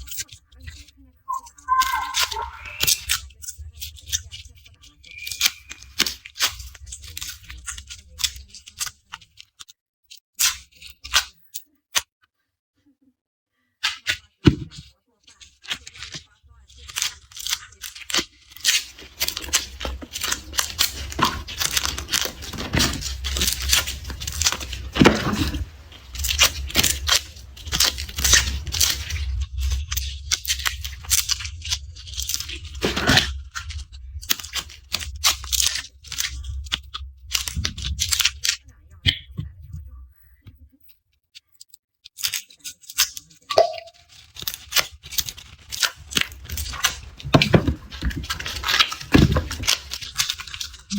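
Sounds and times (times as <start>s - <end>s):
garlic skins crackling and tearing: 16.9s - 38.6s, 42.2s - 43.4s, 44.1s - 50.9s.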